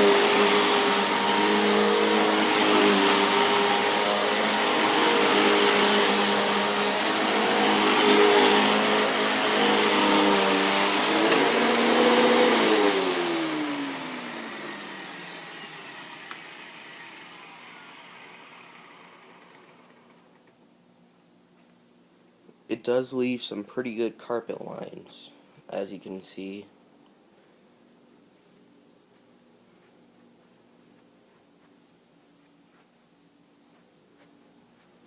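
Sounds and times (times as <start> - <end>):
vacuum cleaner motor whining: 0.0 - 20.4.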